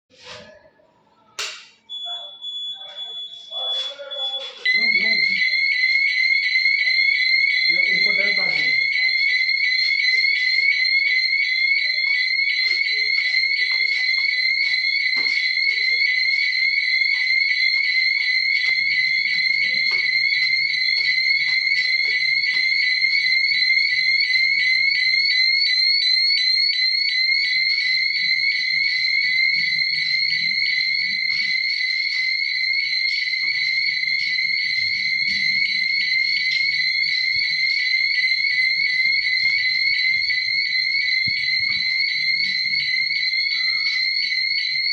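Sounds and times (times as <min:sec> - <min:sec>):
fire alarm pulsing tone: 0:01.4 - 0:44.9.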